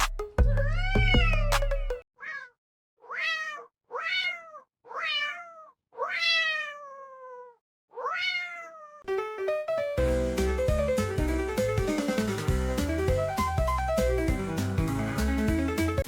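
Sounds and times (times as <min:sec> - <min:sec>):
background music: 0:00.0 - 0:02.0, 0:09.1 - 0:16.0
cat meowing: 0:02.2 - 0:09.0.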